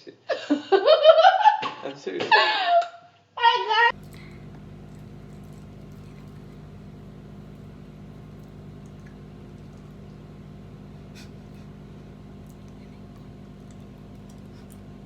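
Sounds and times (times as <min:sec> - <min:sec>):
machine humming: 0:03.9 - 0:15.0
faint clicks: 0:04.0 - 0:15.0.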